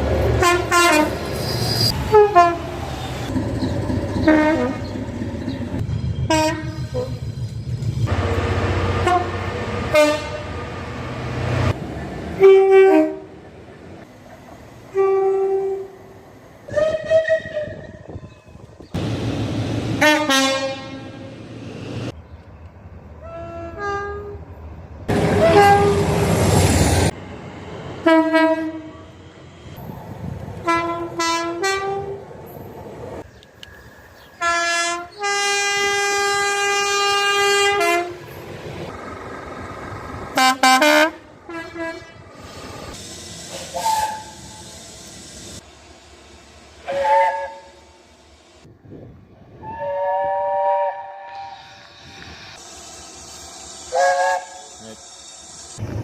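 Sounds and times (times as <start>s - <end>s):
train passing at speed: 0.0s - 56.0s
two-tone train horn blasts: 0.4s - 1.2s, 1.9s - 2.8s, 4.3s - 4.8s, 6.3s - 7.2s, 8.1s - 10.8s, 12.4s - 13.4s, 14.9s - 16.0s, 16.7s - 18.1s, 20.0s - 21.3s, 23.2s - 24.4s, 25.4s - 26.2s, 28.0s - 29.0s, 30.6s - 32.2s, 34.4s - 38.2s, 40.4s - 42.3s, 46.8s - 48.0s, 49.6s - 51.6s, 53.9s - 54.7s.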